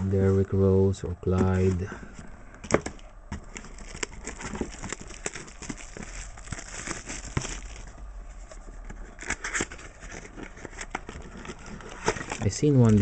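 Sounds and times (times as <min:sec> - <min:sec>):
card wrapper crinkling: 0:02.6 - 0:13.0.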